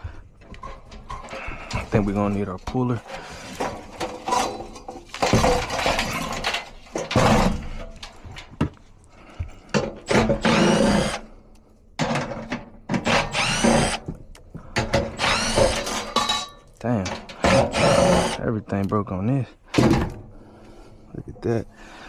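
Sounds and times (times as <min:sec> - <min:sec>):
metal grinding and scraping: 0:00.0 - 0:18.8.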